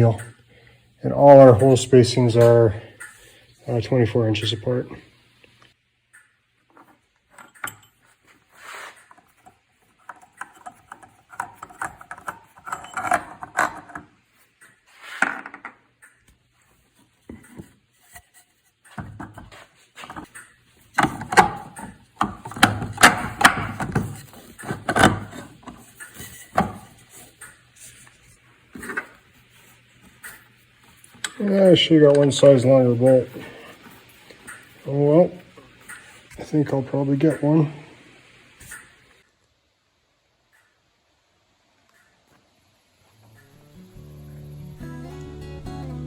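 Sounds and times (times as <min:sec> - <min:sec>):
wooden parts knocking and rattling: 0:09.1 - 0:14.1, 0:18.9 - 0:27.0.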